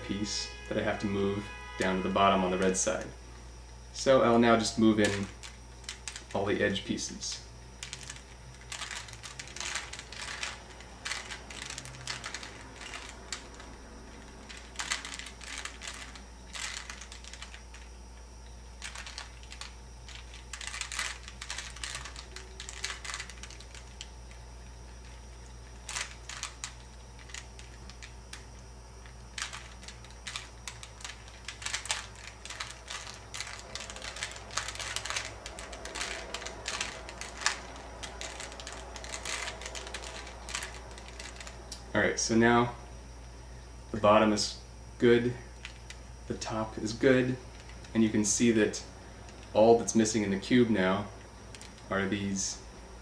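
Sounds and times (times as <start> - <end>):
puzzle cube layers clicking: 29.4 - 41.5.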